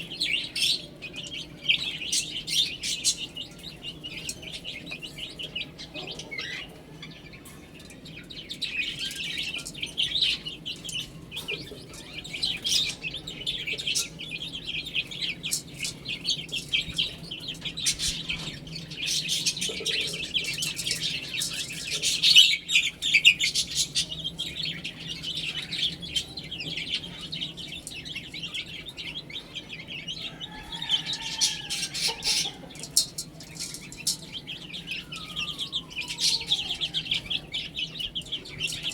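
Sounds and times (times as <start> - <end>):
chicks peeping: 0.0 - 38.9.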